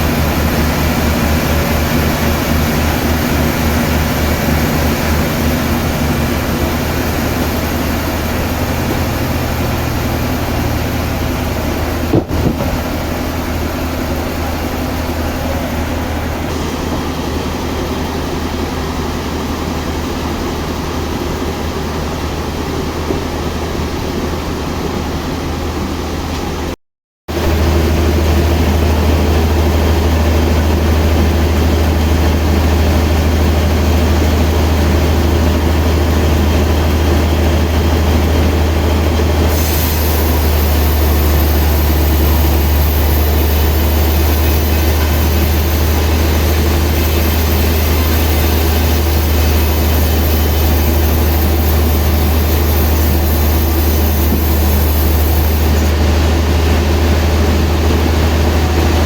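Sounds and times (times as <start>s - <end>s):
sawmill machinery humming: 0.0s - 26.7s, 27.3s - 59.0s
high hiss: 39.5s - 55.9s.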